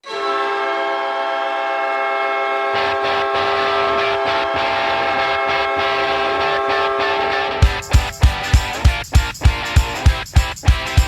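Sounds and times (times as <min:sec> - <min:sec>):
hockey goal horn: 0:00.0 - 0:08.1.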